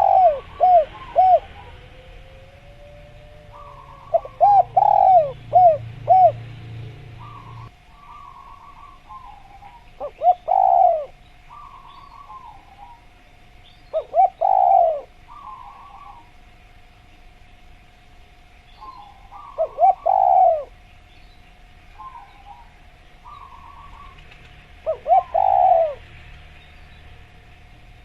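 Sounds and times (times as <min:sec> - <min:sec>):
soft bird chirping: 0:00.0 - 0:06.4, 0:07.1 - 0:27.8
dove cooing: 0:00.0 - 0:13.2, 0:13.8 - 0:16.4, 0:18.8 - 0:20.8, 0:21.9 - 0:26.2
faint steady tone: 0:00.0 - 0:28.0.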